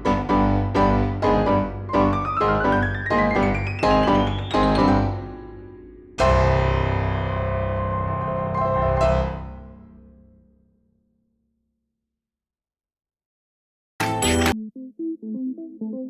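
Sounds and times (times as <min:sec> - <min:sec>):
piano chords: 0:00.0 - 0:10.2, 0:14.0 - 0:14.6.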